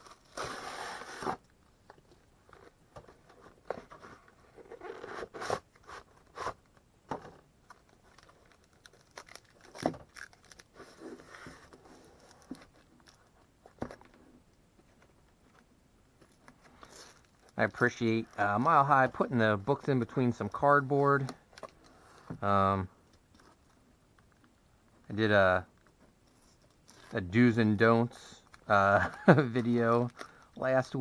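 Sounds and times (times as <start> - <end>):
cardboard package being opened: 0.0 - 6.8, 7.6 - 14.2, 16.2 - 22.3, 28.4 - 31.0.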